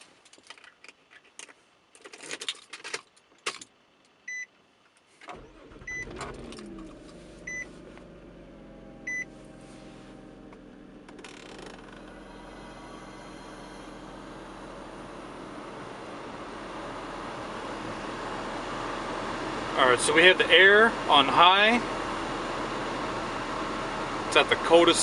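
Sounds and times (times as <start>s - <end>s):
car engine starting and idling: 5.2s - 25.0s
car chime beeping: 7.4s - 7.8s, 8.7s - 10.9s.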